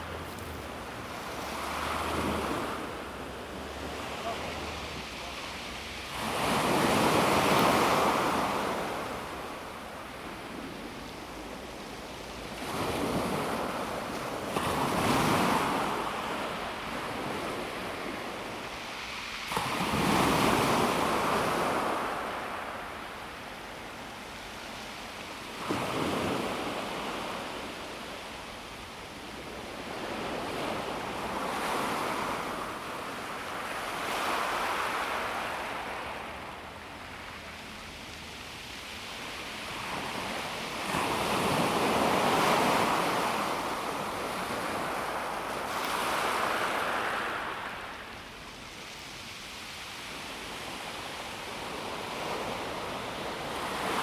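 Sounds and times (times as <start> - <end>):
waves washing on pebble beach: 39.6 - 48.0.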